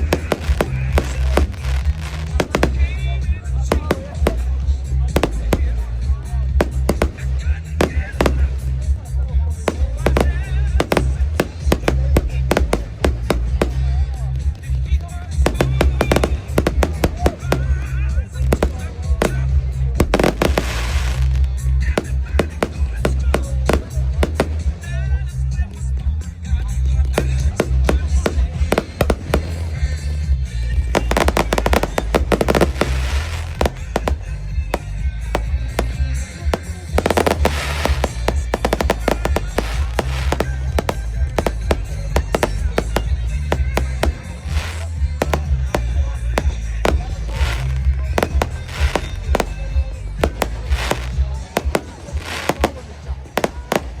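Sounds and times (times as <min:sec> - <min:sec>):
fireworks bangs: 0:00.0 - 0:25.8, 0:26.8 - 0:54.0
fireworks crackling hiss: 0:00.0 - 0:54.0
loud music with heavy bass: 0:00.0 - 0:54.0.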